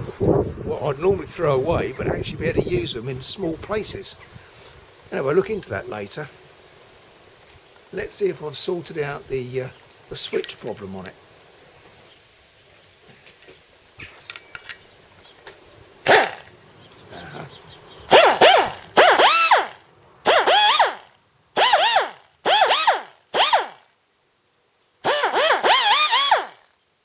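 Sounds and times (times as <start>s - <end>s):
pneumatic cut-off tool whining: 16.1s - 16.5s, 18.1s - 23.9s, 25.0s - 26.7s.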